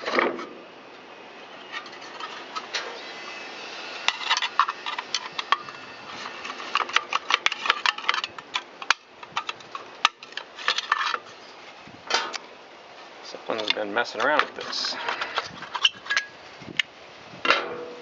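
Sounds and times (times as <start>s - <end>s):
small metal parts clinking: 4.1s - 11.3s.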